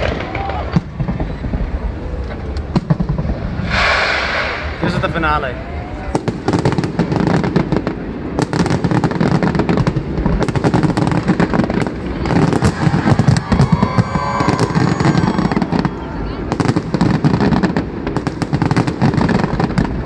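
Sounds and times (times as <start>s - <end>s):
fireworks bangs and crackling: 0.0s - 20.0s.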